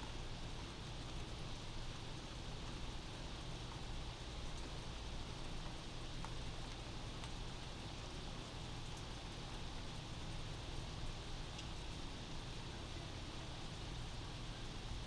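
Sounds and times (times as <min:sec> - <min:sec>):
steady rain patter: 0:00.0 - 0:15.0
faint drip ticks: 0:03.7 - 0:10.3, 0:11.5 - 0:11.8.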